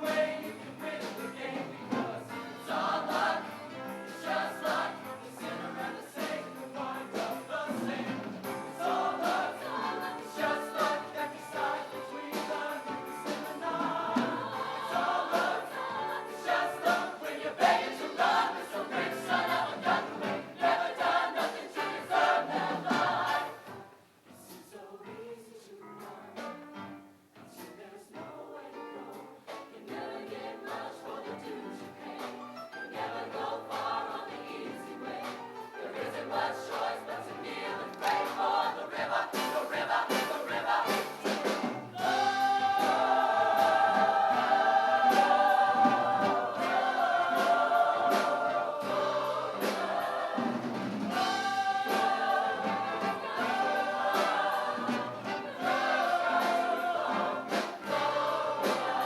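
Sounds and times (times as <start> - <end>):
choir singing: 0.0 - 26.5, 27.5 - 59.0.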